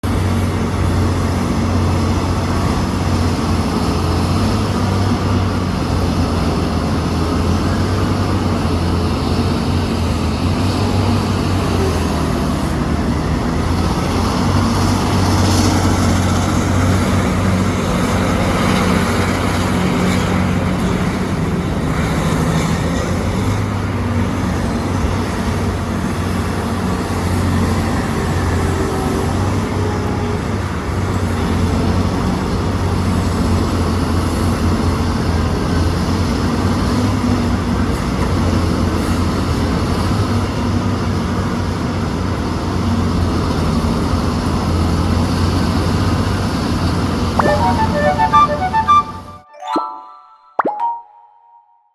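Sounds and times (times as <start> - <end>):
excavator diesel engine droning: 0.1 - 39.9.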